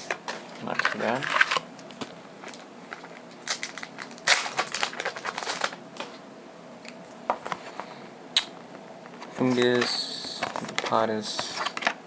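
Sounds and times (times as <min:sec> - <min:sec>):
foil pack crackling: 0:00.3 - 0:01.6, 0:02.4 - 0:06.2.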